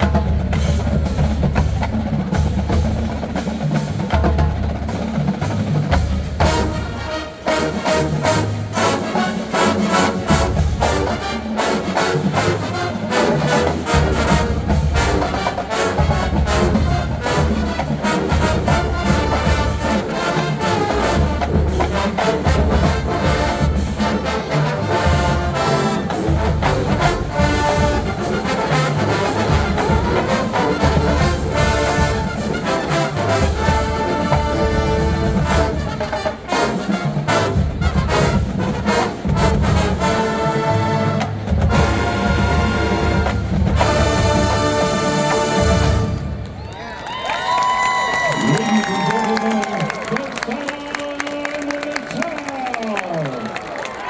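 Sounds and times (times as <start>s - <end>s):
marching drums: 0.0s - 50.1s
brass section playing chords: 6.4s - 46.6s.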